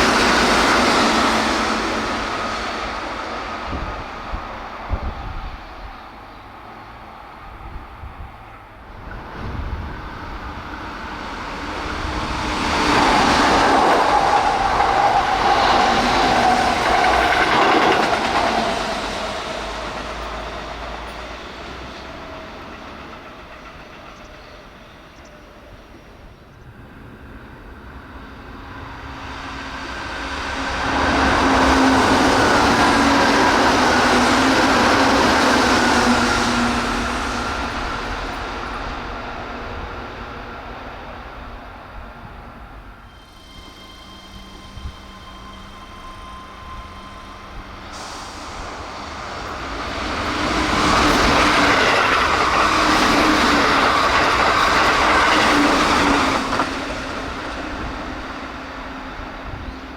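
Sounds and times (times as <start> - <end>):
train motor whine: 42.7 - 59.9.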